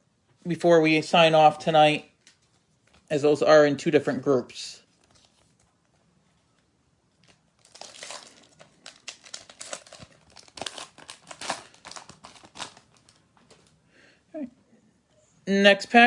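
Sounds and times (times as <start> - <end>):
wrapper tearing and crinkling: 7.2 - 13.2.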